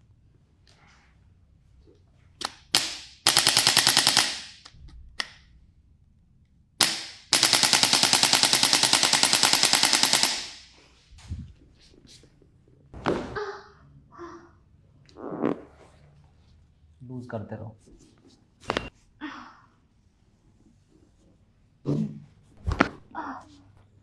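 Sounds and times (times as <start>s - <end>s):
electric percussion device hammering: 6.8s - 10.8s.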